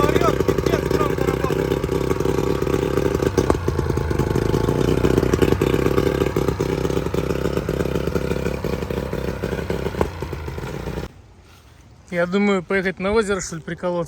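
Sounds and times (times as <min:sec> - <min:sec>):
outboard motor clattering: 0:00.0 - 0:11.1.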